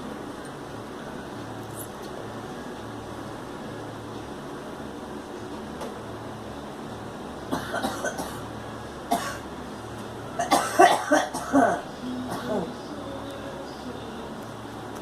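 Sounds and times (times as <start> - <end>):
girl coughing: 7.5 - 8.4, 9.1 - 9.4, 10.4 - 12.7.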